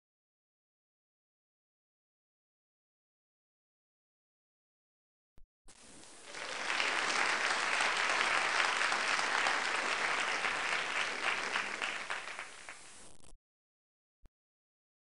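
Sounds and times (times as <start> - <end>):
crowd applause: 6.1 - 13.0.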